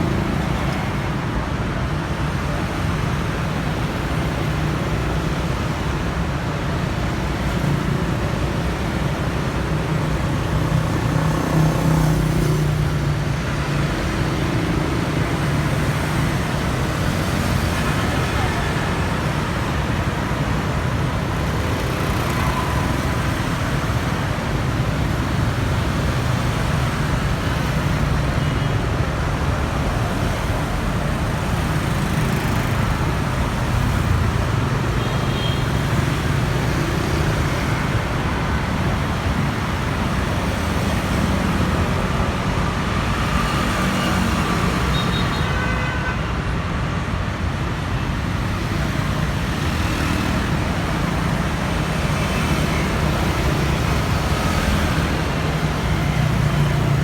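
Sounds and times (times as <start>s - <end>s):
traffic rumble: 0.0s - 45.5s.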